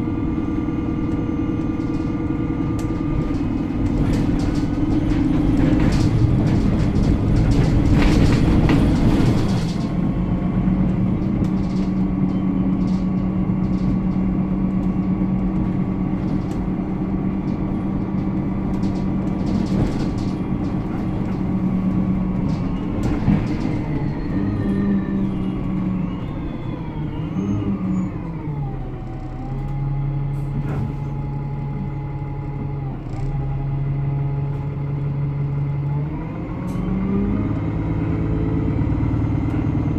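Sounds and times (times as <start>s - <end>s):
bus drivetrain whine: 0.0s - 39.9s
rush of noise inside bus: 0.0s - 39.9s
thin squealing tones: 20.0s - 28.4s.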